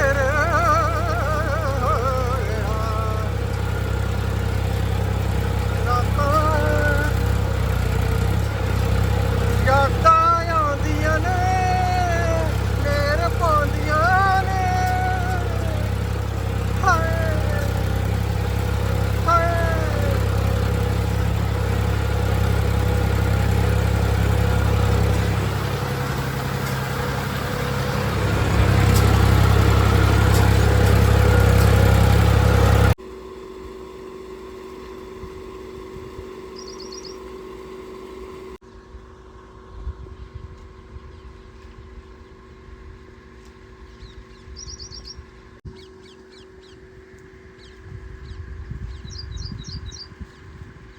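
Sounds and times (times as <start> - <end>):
tractor engine running: 0.0 - 50.9
bird chirps: 36.6 - 37.3, 43.9 - 46.8, 47.6 - 50.6.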